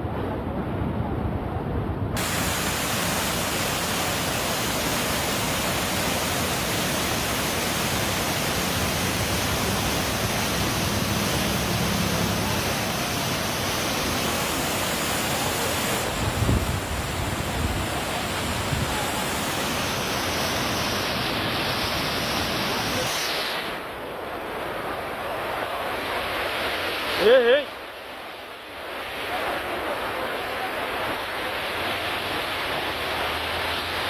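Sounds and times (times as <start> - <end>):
loud rushing noise: 2.2 - 23.9.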